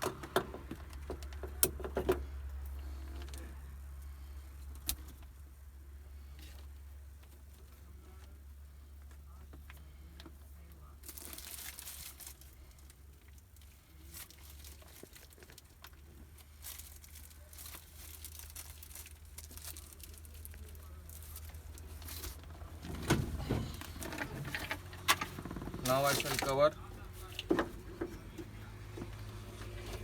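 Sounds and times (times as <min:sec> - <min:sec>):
plastic crinkling and rustling: 0:10.6 - 0:27.6.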